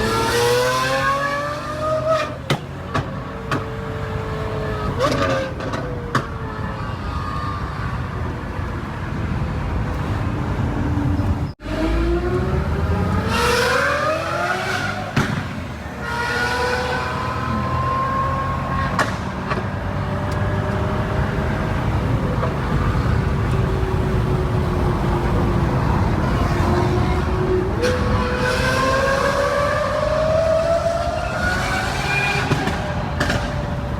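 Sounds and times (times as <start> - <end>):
car engine revving: 0.0 - 5.8, 11.6 - 33.9.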